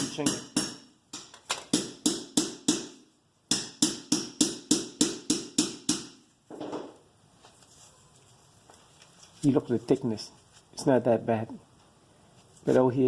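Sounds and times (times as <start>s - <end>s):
soft rustle: 7.2s - 10.9s, 11.8s - 13.0s.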